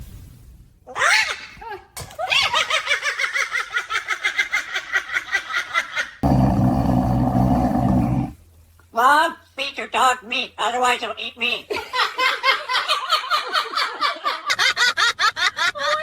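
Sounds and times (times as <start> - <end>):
low steady growl: 6.2 - 8.4.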